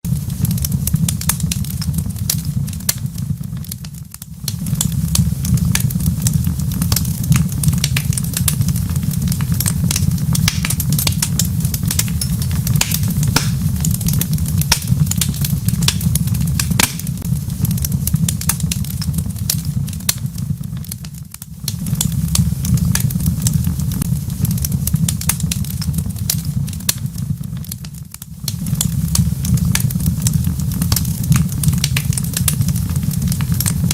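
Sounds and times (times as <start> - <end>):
wood fire crackling: 0.0 - 33.9.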